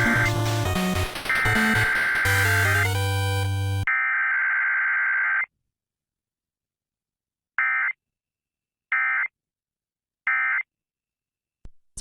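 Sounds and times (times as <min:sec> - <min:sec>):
squawking digital data tones: 0:00.0 - 0:04.2.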